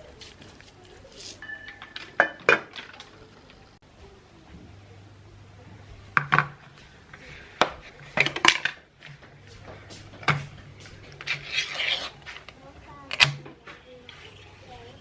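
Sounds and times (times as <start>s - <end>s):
faint low hum: 0.0s - 15.0s
dishes and utensils clinking: 1.3s - 3.2s.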